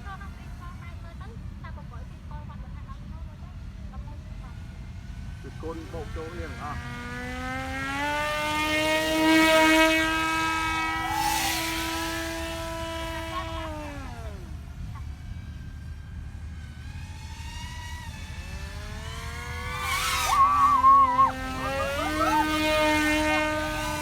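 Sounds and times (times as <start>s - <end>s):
model airplane motor whining: 8.9s - 24.0s.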